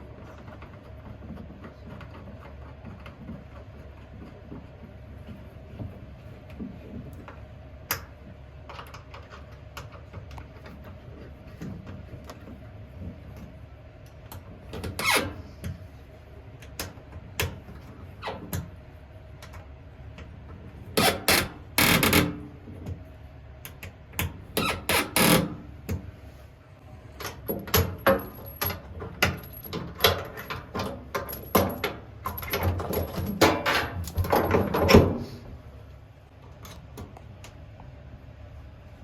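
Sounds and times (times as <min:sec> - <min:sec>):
hand tools and metal fittings rattling: 0:27.2 - 0:35.4.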